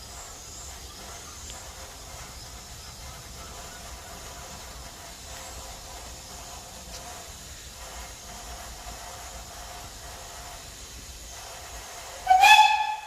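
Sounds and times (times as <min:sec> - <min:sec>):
steam hissing: 0:00.0 - 0:13.0
steam whistle blast: 0:12.2 - 0:13.0.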